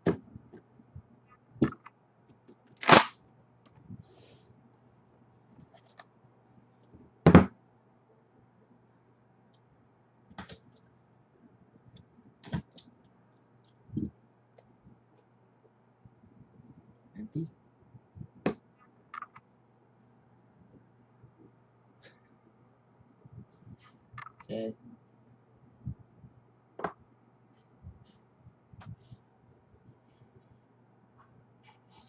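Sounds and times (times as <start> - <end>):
faint low hum: 0.0 - 32.0.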